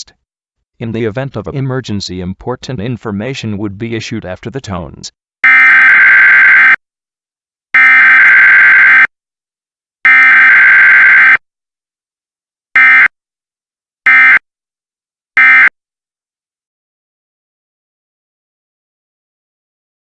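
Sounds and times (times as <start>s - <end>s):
data tone bursts: 14.1s - 14.4s, 15.4s - 15.7s.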